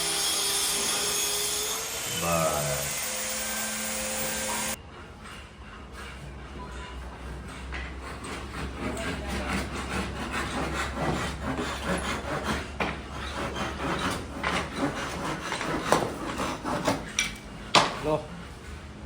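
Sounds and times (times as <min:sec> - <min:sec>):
rasping and rubbing strokes: 0:02.4 - 0:18.9.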